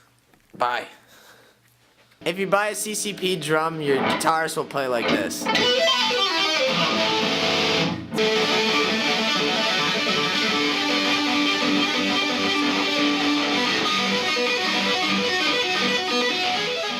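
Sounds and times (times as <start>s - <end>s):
guitar playing fast run: 5.1s - 16.9s.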